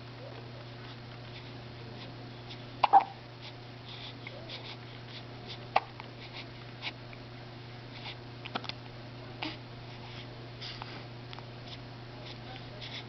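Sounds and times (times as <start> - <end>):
steady low hum: 0.0 - 13.0
person hiccuping: 2.8 - 3.2.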